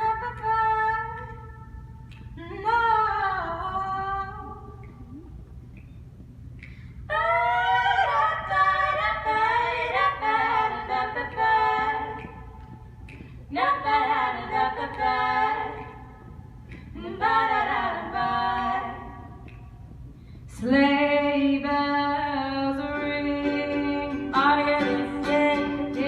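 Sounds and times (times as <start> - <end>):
women singing in harmony: 0.0 - 1.4, 7.1 - 12.5, 13.5 - 16.2, 16.9 - 19.4, 20.6 - 26.0.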